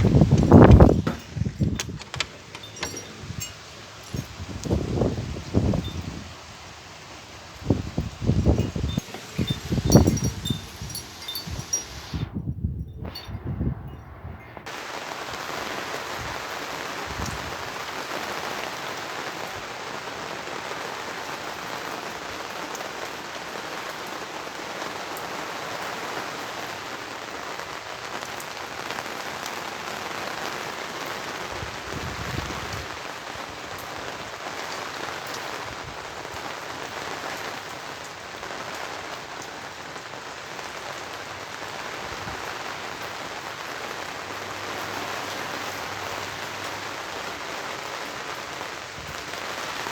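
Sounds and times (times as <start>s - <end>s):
heavy rain falling: 0.0s - 12.2s, 14.6s - 49.9s.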